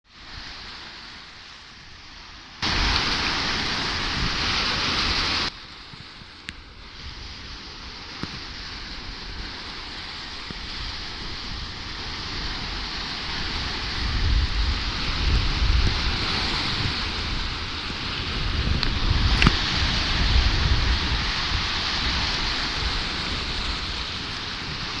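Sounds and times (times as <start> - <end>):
surf on the shore: 0.0 - 25.0
strong wind on microphone: 2.6 - 5.5, 6.2 - 25.0
low gusty rumbles: 10.8 - 24.1.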